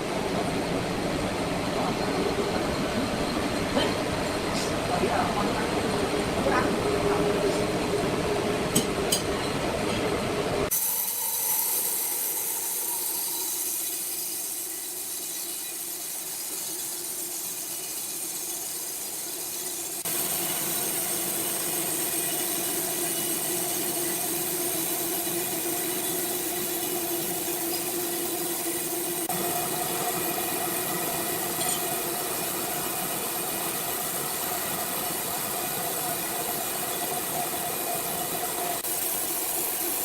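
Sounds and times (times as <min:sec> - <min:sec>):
machinery hum with tones: 0:00.0 - 0:18.4.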